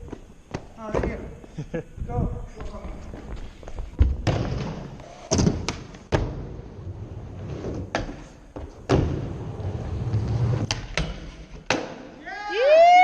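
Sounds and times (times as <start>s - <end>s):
skateboard wheels rolling: 2.8s - 11.8s.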